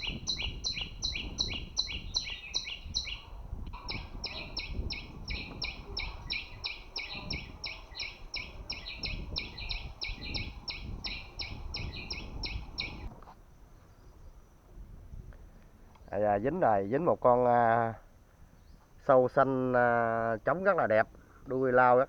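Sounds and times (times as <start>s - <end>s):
bird chirping rapidly: 0.0s - 13.1s.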